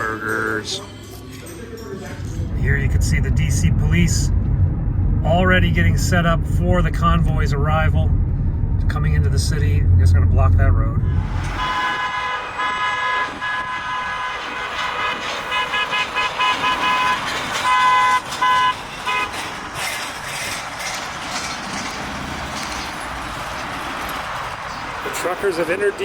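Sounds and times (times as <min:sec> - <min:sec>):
road traffic noise: 0:00.0 - 0:26.0
vehicle horns honking: 0:11.0 - 0:19.6.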